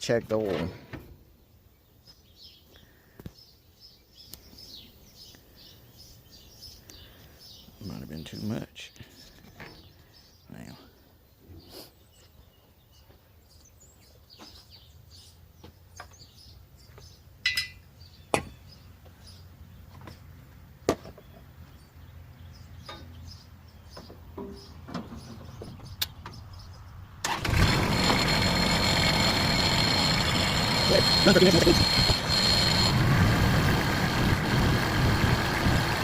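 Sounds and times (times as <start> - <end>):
tractor diesel engine running: 27.2 - 36.0.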